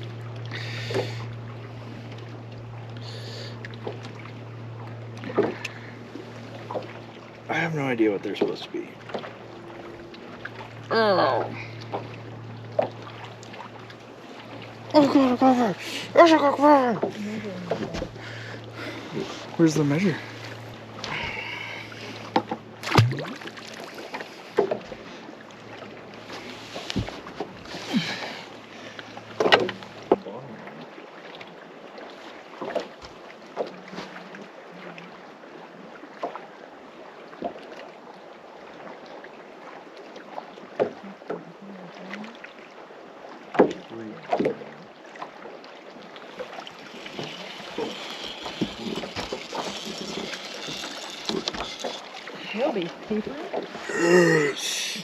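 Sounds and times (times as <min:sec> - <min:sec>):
low hum: 0:00.0 - 0:31.0, 0:46.0 - 0:55.0
wind and water noise: 0:00.0 - 0:55.0
knocks and taps on boat: 0:05.1 - 0:05.8, 0:11.3 - 0:13.6, 0:16.9 - 0:18.2, 0:22.3 - 0:23.6, 0:24.2 - 0:25.0, 0:26.8 - 0:27.6, 0:29.4 - 0:30.3, 0:40.7 - 0:41.4, 0:43.5 - 0:44.7.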